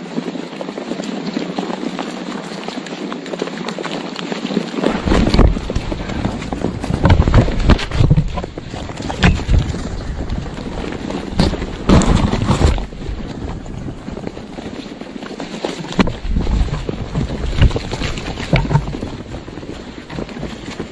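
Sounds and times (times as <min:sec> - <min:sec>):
wind buffeting microphone: 0:04.4 - 0:20.9
vultures thumping and rustling: 0:04.5 - 0:20.9.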